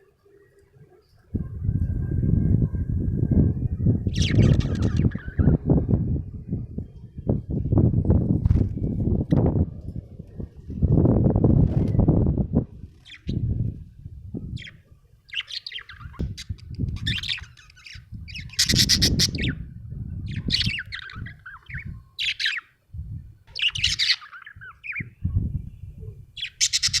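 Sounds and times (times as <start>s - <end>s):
budgerigar chirping and chattering: 15.3s - 19.6s, 20.5s - 22.6s, 23.6s - 25.0s, 26.4s - 27.0s.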